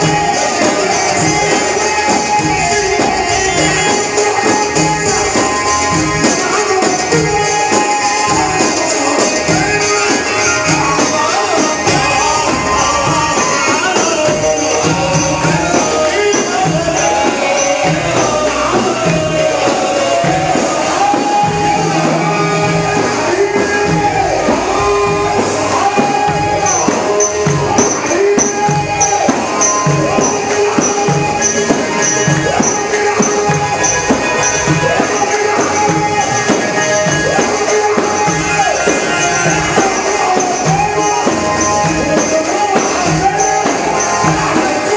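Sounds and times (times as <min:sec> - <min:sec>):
folk band instrumental: 0:00.0 - 0:44.9
tambourine jingles: 0:25.7 - 0:44.9.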